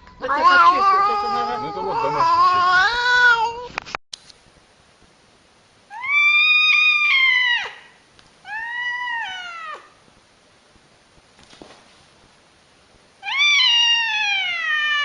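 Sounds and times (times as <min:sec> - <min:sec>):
cat yowling: 0:00.2 - 0:03.7, 0:05.9 - 0:10.0, 0:13.2 - 0:15.0.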